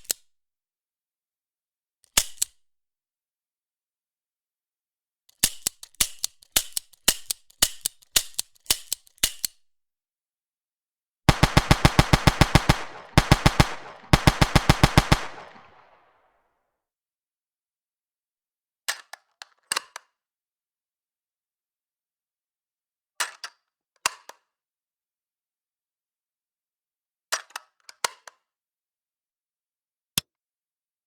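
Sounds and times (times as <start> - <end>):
automatic gunfire bursts: 11.3 - 16.0
sharp gunshots: 11.3 - 16.0.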